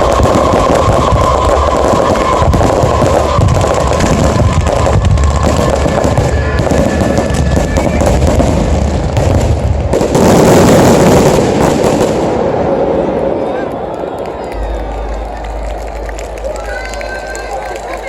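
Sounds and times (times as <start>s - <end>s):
fireworks booming: 0.0s - 13.4s
fireworks crackling: 0.0s - 18.0s.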